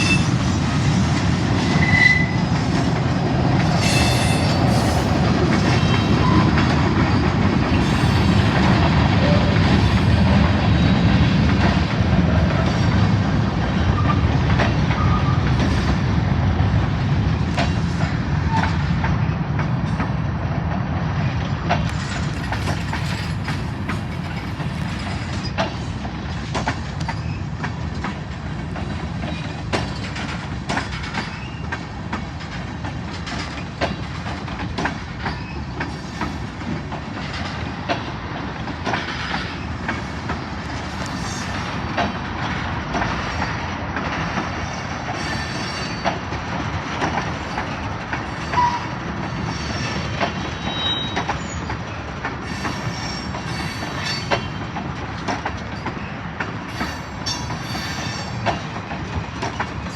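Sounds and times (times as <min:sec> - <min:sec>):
railroad cars rumbling: 0:00.0 - 0:59.9
wheels clicking over rail joints: 0:17.5 - 0:59.9.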